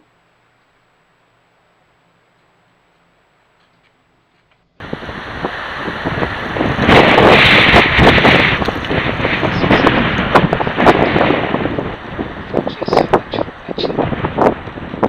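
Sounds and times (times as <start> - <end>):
wind buffeting microphone: 4.8 - 15.0.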